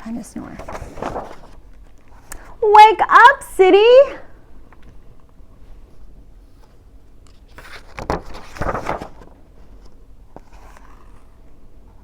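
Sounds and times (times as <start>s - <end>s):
faint room noise: 0.0s - 12.0s
paper page rustling: 0.4s - 2.3s, 6.6s - 11.4s.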